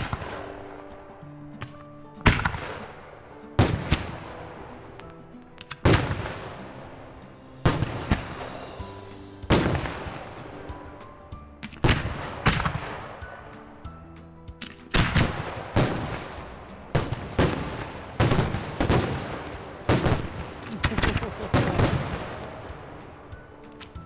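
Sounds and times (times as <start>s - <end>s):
music with held notes: 0.0s - 24.0s
fireworks bursting: 7.6s - 13.8s, 14.6s - 24.0s.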